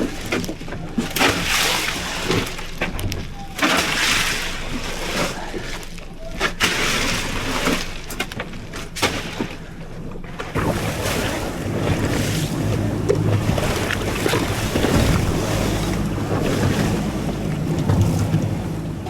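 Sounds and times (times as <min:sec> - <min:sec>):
boat outboard engines droning: 0:00.0 - 0:19.0
water rushing past hull: 0:00.0 - 0:19.0.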